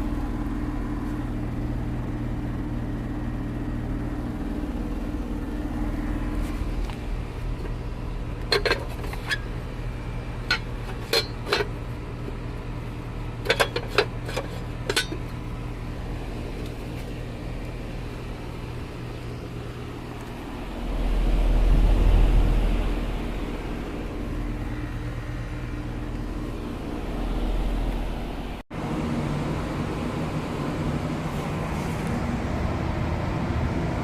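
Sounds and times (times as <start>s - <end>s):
hvac equipment humming: 0.0s - 34.0s
low rumble: 20.2s - 28.6s.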